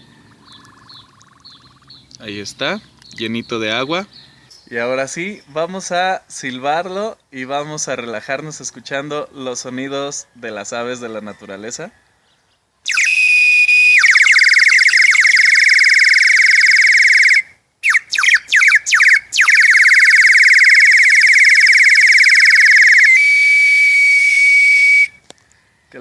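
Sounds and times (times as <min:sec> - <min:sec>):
water bird whistle trilling: 0:12.9 - 0:25.2.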